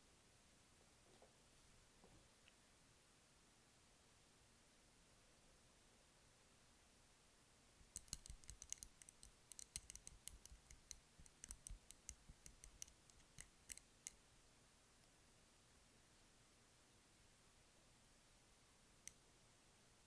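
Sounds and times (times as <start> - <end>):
rapid light tapping clicks: 7.9 - 14.2.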